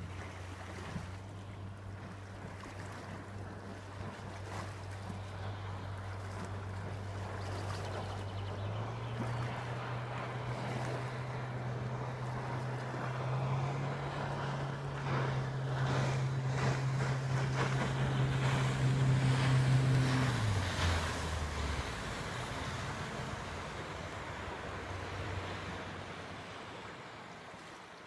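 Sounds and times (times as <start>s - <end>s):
boat engine humming: 0.0s - 28.0s
water rushing: 0.0s - 28.0s.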